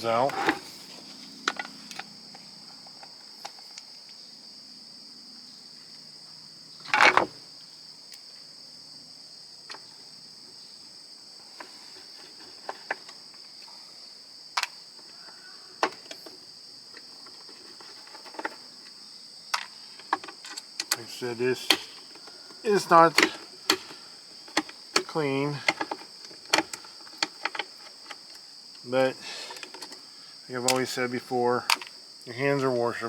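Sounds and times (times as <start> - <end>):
crickets chirring: 0.0 - 33.0
hand tools clicking and knocking: 0.2 - 0.7, 15.8 - 16.4, 19.6 - 28.4, 29.0 - 30.0, 30.6 - 31.0, 31.6 - 31.9.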